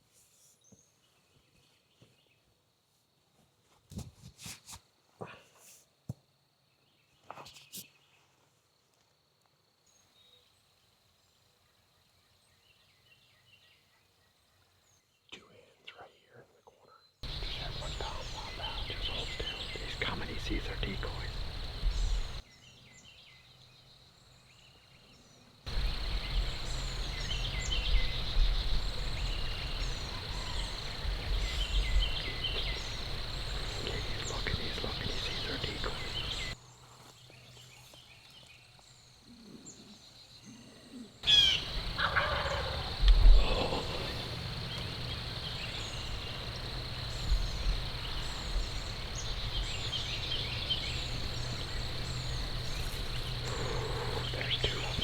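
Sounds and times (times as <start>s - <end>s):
songbirds singing: 9.8s - 55.0s
wind rumble on microphone: 17.3s - 22.4s, 25.7s - 36.6s, 41.6s - 55.0s.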